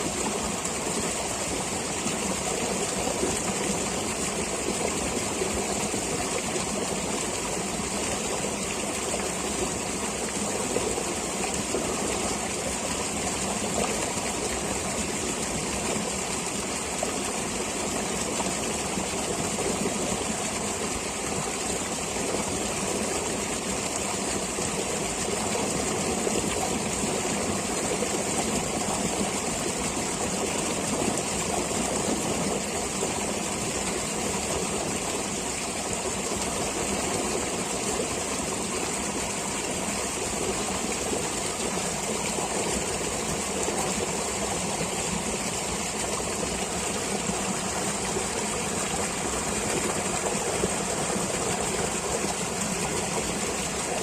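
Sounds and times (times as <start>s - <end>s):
stream of water flowing: 0.0s - 54.0s.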